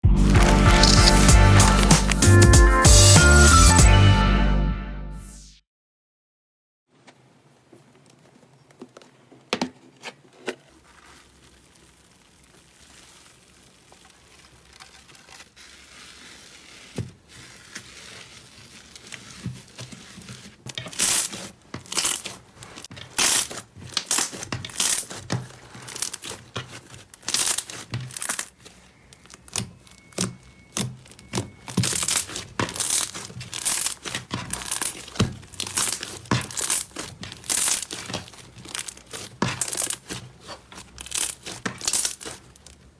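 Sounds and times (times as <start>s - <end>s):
slime squeezed by hand: 0.2s - 2.5s, 10.7s - 22.4s.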